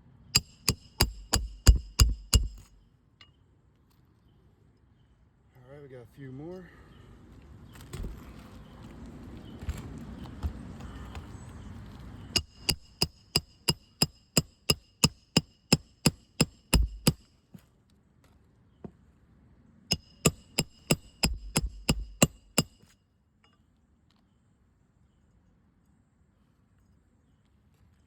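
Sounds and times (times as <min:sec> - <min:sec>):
hammer driving nails: 0:00.4 - 0:02.8, 0:12.4 - 0:17.2, 0:19.9 - 0:22.9.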